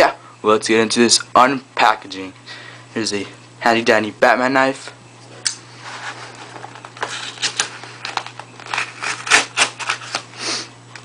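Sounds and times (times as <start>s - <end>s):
knife cutting tape: 7.0s - 10.2s.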